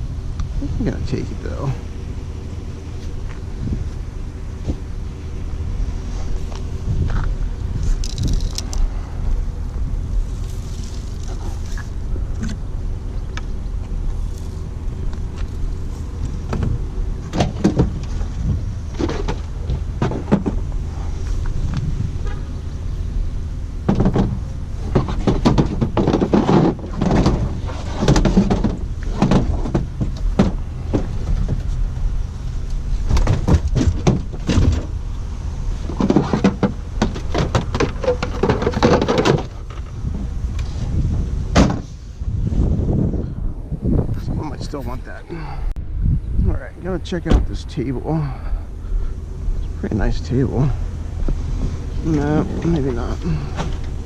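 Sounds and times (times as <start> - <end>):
steady low rumble: 0.0 - 54.0
metal parts clunking and rattling: 7.8 - 8.9, 23.8 - 31.8, 33.1 - 35.0, 35.8 - 40.0.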